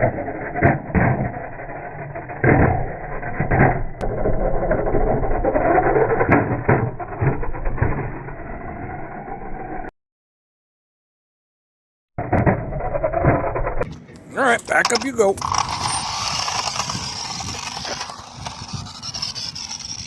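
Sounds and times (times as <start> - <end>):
toy car motor whining: 14.2 - 20.0.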